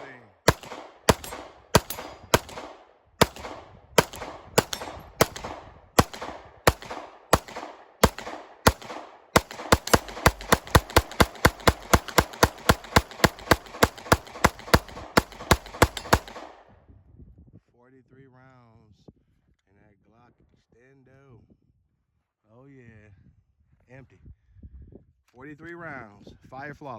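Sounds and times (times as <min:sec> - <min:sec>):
pistol shots with echo: 0:00.0 - 0:16.7.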